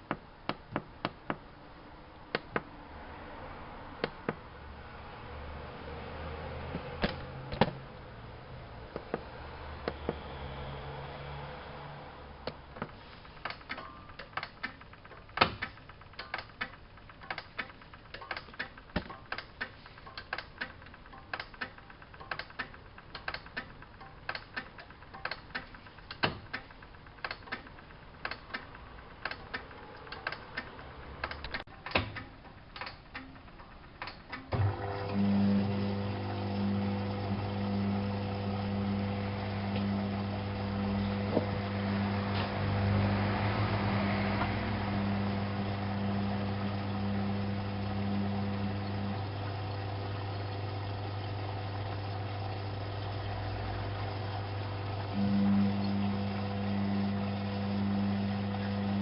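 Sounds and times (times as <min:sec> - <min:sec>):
low motor hum: 0:00.0 - 0:59.0
washing machine clicks and knocks: 0:13.5 - 0:19.6, 0:20.2 - 0:27.6.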